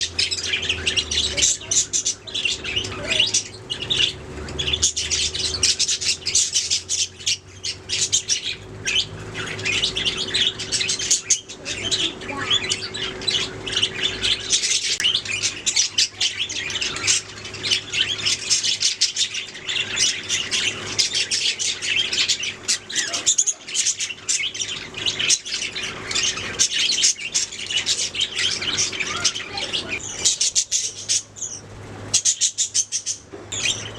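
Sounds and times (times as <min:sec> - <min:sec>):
budgerigars chirping and chattering: 0:00.0 - 0:33.9.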